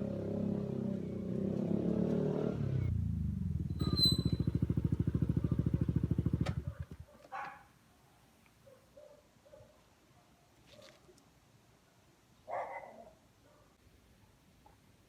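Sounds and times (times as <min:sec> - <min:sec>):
scooter engine idling: 0:02.9 - 0:07.0.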